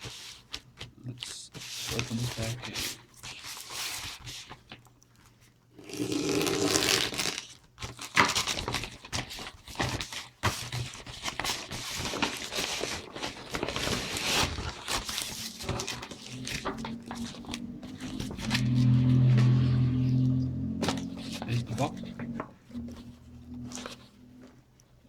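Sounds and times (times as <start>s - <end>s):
package being torn open: 6.0s - 16.0s
wrapping crumpled by hand: 6.4s - 21.9s.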